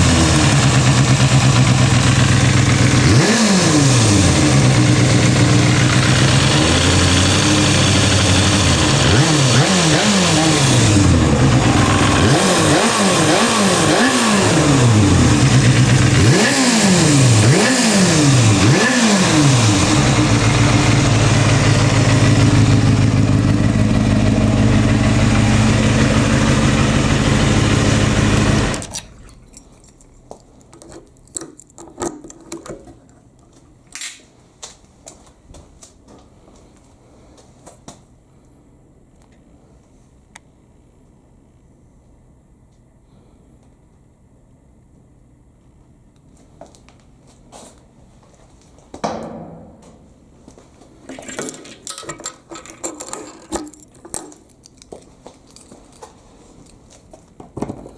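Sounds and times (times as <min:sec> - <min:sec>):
motorcycle engine idling and revving: 0:00.0 - 0:29.2.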